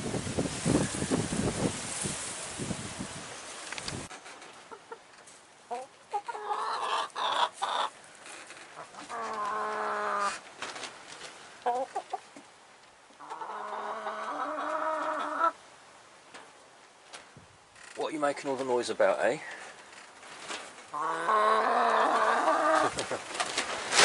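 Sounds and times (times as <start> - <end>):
chickens clucking: 4.4 - 8.0, 8.7 - 12.5, 13.1 - 15.6, 20.4 - 24.0
chickens long drawn-out calls: 5.7 - 10.5, 13.1 - 15.6, 20.8 - 23.7.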